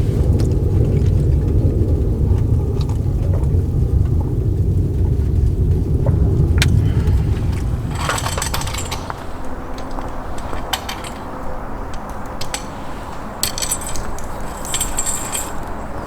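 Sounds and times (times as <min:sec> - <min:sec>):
steady rushing noise: 0:04.0 - 0:16.0
metal items jingling and clinking: 0:06.7 - 0:16.0.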